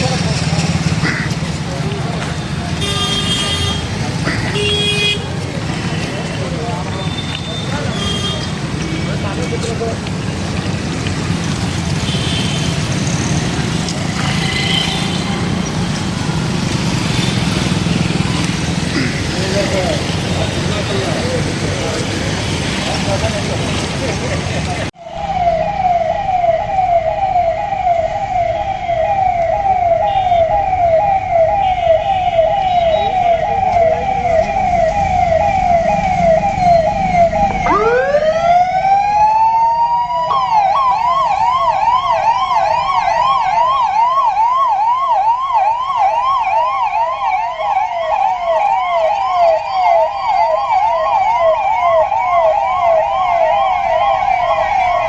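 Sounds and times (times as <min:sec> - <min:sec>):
police siren warbling: 0:25.0 - 0:55.0
second siren warbling higher: 0:25.0 - 0:55.0.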